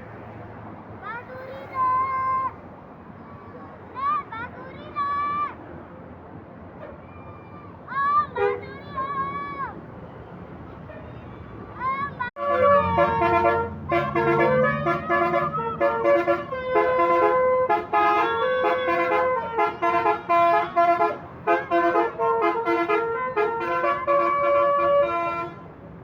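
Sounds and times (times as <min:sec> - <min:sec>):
air horn melody: 0:12.4 - 0:25.6.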